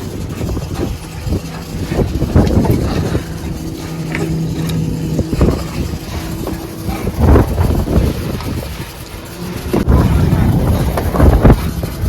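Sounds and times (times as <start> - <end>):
boat engine humming: 0.0 - 12.0.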